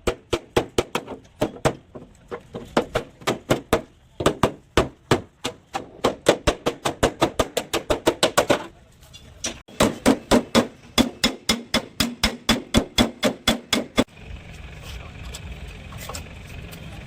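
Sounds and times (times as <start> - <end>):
hammer striking sheet metal: 9.6 - 14.1.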